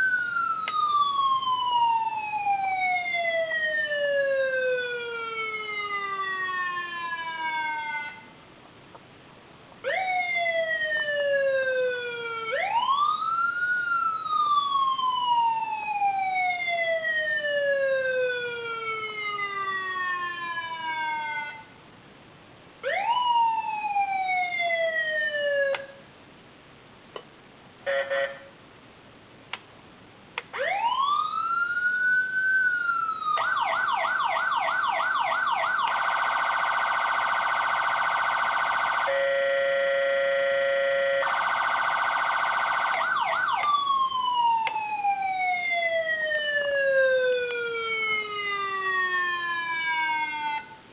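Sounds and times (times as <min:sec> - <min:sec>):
electronic siren wailing: 0:30.6 - 0:50.8.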